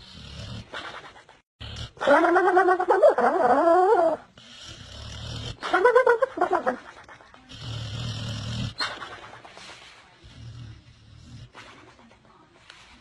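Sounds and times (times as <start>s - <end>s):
dog snoring: 0.0s - 0.7s, 1.6s - 2.0s, 4.4s - 5.6s, 7.5s - 8.9s, 10.2s - 11.6s.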